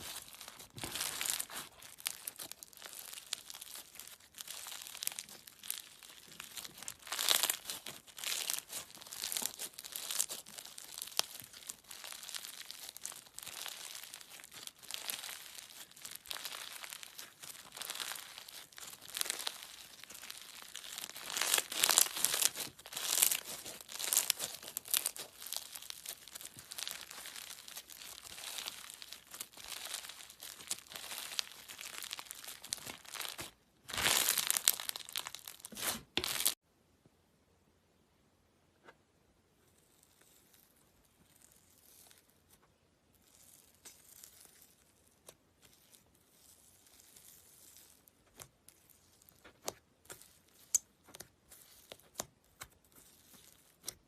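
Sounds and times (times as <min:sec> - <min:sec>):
slime crackling and popping: 0:00.0 - 0:36.6, 0:43.2 - 0:54.0.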